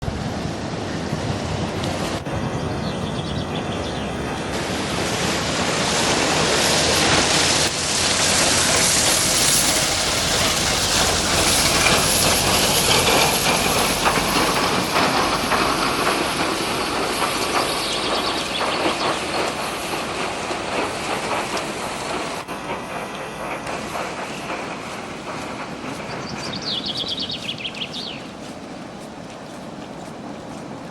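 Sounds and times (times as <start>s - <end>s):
snow avalanche rushing: 0.0s - 24.7s.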